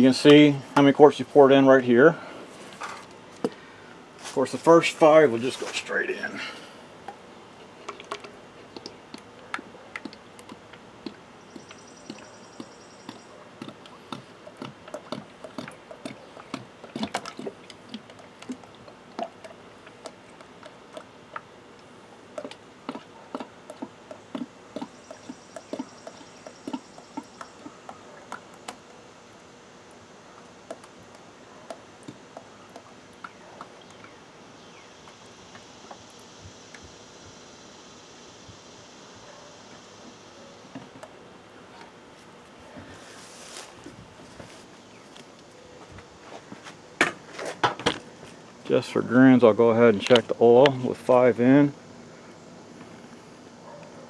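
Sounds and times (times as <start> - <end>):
oil glugging through funnel: 7.5 - 28.7.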